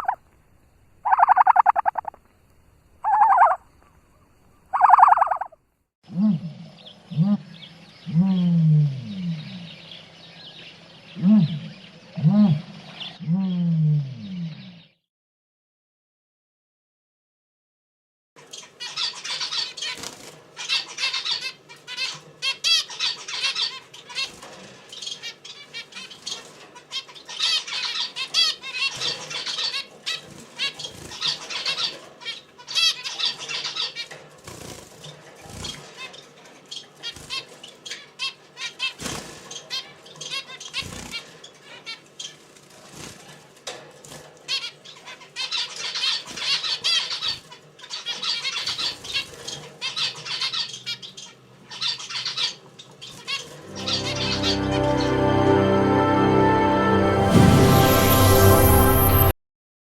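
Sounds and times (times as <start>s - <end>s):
small birds chirping: 0.0s - 5.6s, 6.6s - 15.0s, 44.6s - 54.5s.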